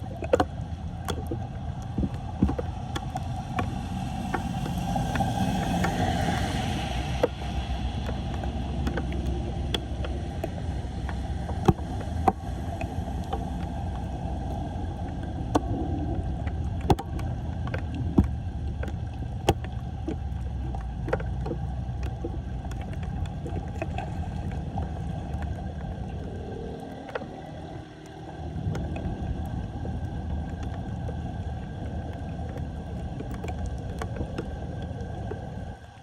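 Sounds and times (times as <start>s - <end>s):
floodwater rushing into storm drain: 2.0s - 17.8s.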